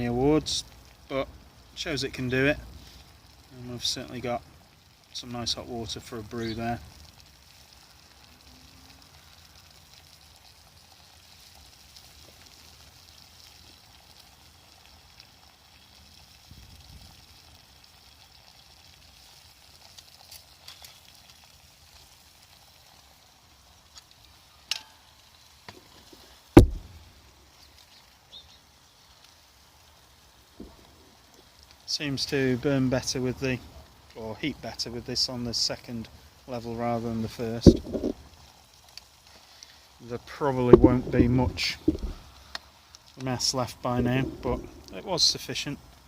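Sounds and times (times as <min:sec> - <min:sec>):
water boiling in a pot: 0:00.0 - 0:46.0
light knocks: 0:26.6 - 0:26.9
loud thump: 0:26.6 - 0:27.0, 0:37.6 - 0:38.2, 0:40.8 - 0:42.2.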